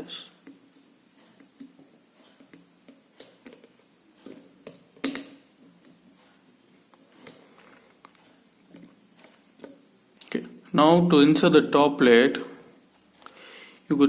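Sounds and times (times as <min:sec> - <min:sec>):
plastic parts clicking and tapping: 0:01.6 - 0:05.9.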